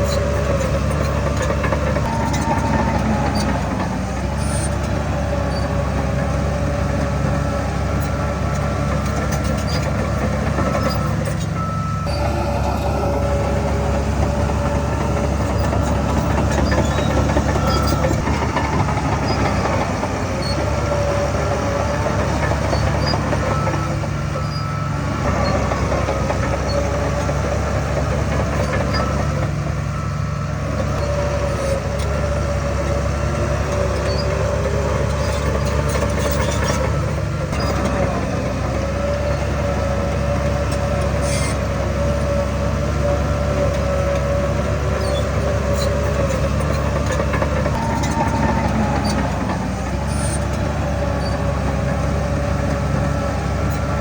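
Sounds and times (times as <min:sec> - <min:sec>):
heavy machinery engine drone: 0:00.0 - 0:54.0
wavering machine whine: 0:10.5 - 0:26.0, 0:47.6 - 0:52.5.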